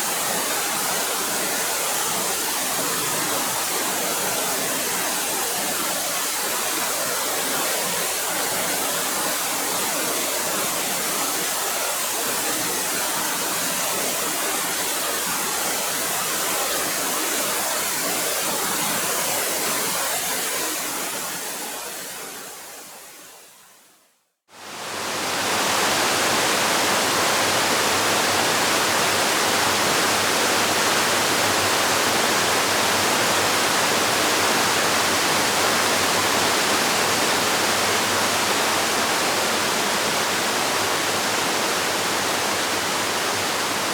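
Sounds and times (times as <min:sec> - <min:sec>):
waterfall rushing: 0:24.8 - 0:43.9.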